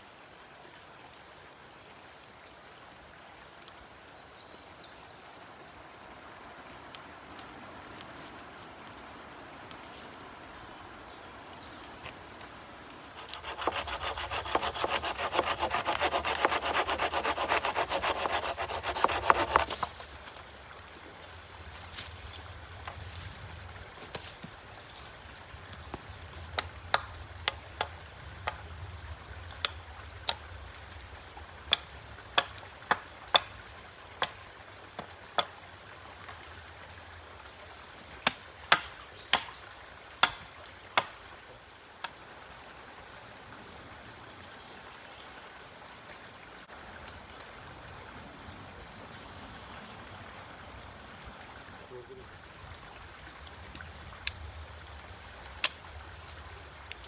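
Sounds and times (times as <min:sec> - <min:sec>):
hand tool chopping wood: 0:13.2 - 0:20.0, 0:31.7 - 0:33.5, 0:38.2 - 0:39.6, 0:40.2 - 0:41.1.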